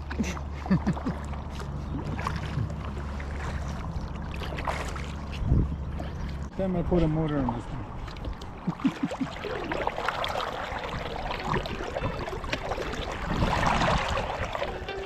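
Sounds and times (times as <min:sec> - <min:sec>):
paddle splashing in water: 0:00.0 - 0:06.5, 0:07.7 - 0:15.0
water trickling: 0:07.3 - 0:15.0.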